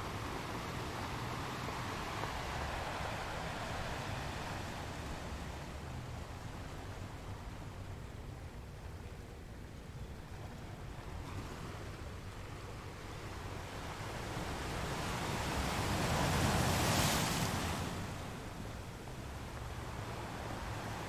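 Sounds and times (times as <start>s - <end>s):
waves breaking on shore: 0.0s - 7.6s, 10.2s - 21.0s
low rumble of the sea: 0.0s - 21.0s.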